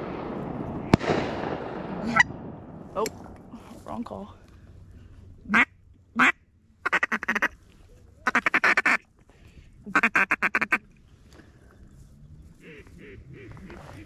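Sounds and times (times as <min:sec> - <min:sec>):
duck call quacks: 0:05.5 - 0:07.6, 0:08.3 - 0:09.0, 0:09.9 - 0:10.8, 0:12.6 - 0:14.0.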